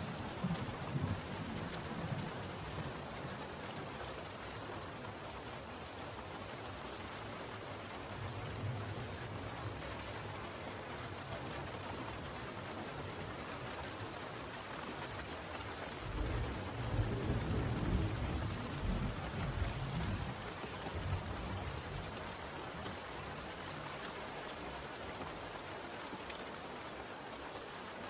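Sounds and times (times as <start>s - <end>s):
steady rain hiss: 0.0s - 28.0s
low thunder rumble: 16.0s - 22.0s.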